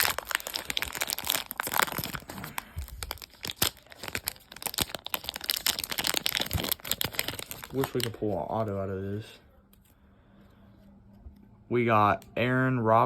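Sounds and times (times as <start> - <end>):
card pack wrapper crinkling and tearing: 0.0 - 8.8.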